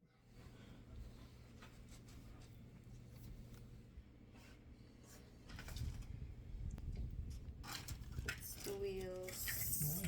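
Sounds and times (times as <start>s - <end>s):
brief hum-like voice: 9.6s - 10.0s.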